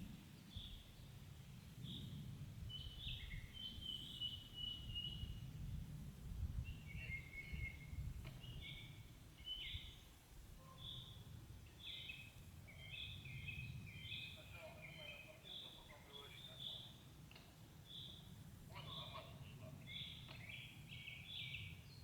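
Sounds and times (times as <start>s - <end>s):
small birds chirping and trilling: 11.8s - 17.0s.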